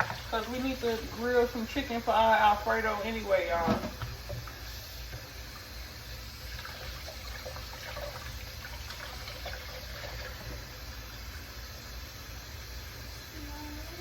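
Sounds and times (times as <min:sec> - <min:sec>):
tap water running into sink: 0:00.0 - 0:13.1.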